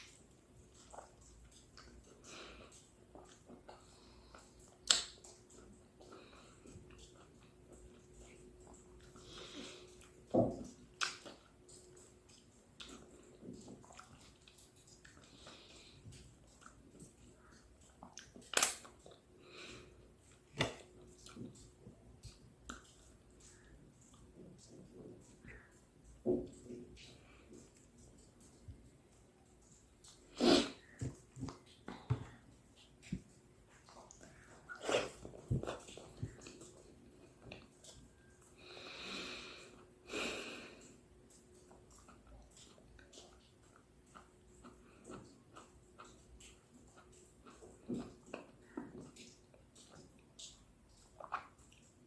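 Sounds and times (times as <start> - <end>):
wet chewing of fruit: 0.0 - 52.0
wet mouth clicks: 4.6 - 5.4.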